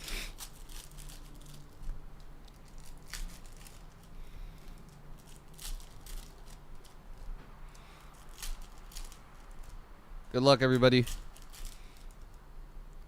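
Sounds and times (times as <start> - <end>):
foil wrappers crinkling and tearing: 0.0 - 9.8, 10.6 - 12.3
low steady hum: 0.0 - 13.0.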